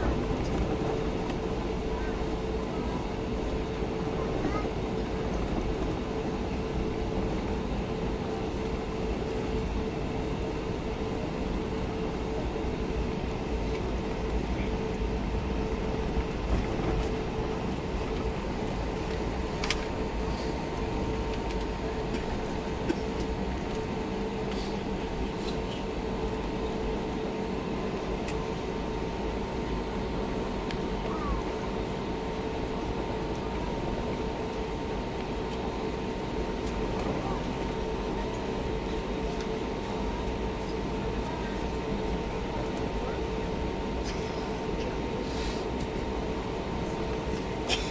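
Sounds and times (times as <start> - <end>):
airliner cabin rumble and hum: 0.0 - 47.9.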